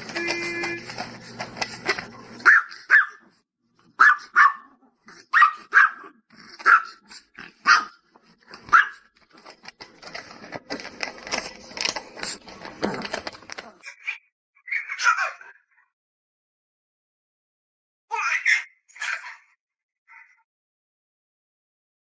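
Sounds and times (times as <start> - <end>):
scuffling and clicking: 0.0 - 2.4
dog barking: 2.4 - 8.0, 8.6 - 9.1.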